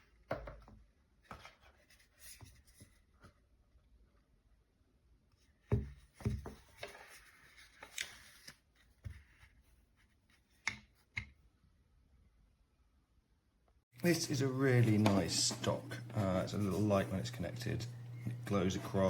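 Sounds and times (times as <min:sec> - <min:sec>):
rubbing and rustling: 0:14.1 - 0:19.0.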